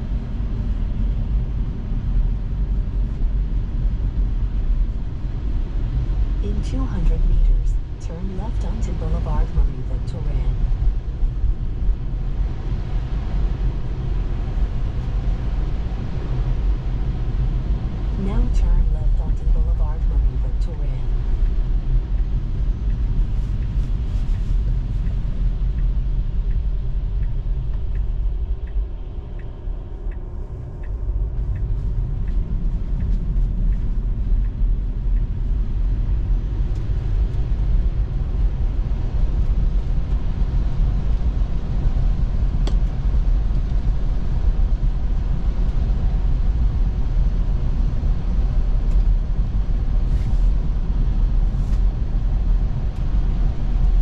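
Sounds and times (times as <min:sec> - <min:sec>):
turn signal ticking: 0:20.7 - 0:38.2.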